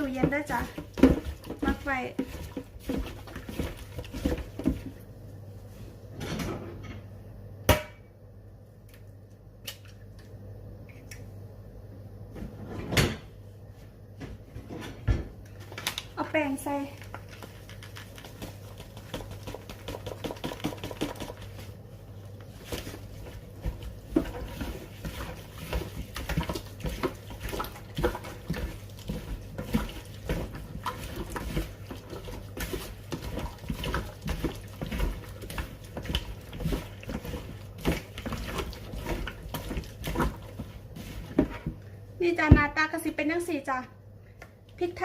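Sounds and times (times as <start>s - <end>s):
hands squelching wet marinade: 0.0s - 4.9s, 16.4s - 21.7s, 22.4s - 41.6s
low steady hum: 0.0s - 45.0s.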